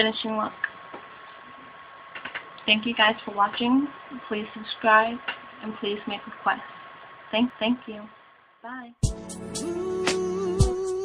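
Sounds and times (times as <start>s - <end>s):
song with drum beat: 9.0s - 11.0s.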